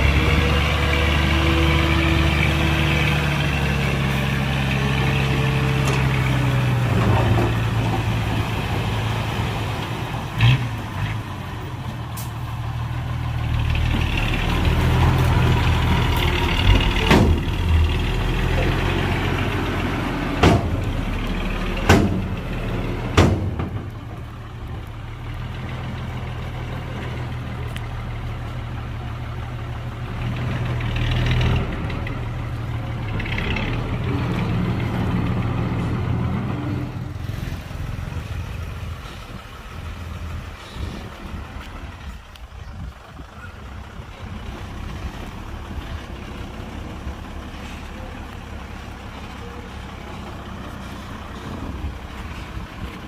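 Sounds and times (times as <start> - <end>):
diesel machinery engine running: 0.0 - 53.0
sharp metallic knocks: 20.4 - 20.8, 21.8 - 22.4, 23.2 - 23.9.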